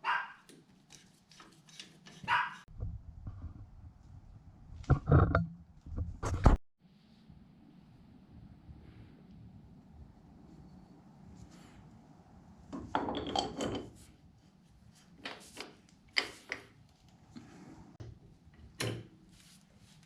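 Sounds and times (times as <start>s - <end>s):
parts knocking and clinking: 12.7s - 14.1s
tools clattering: 12.8s - 14.0s.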